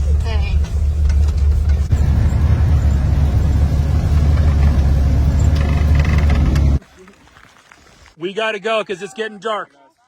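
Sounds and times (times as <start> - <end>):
snow cat engine drone: 1.8 - 6.8.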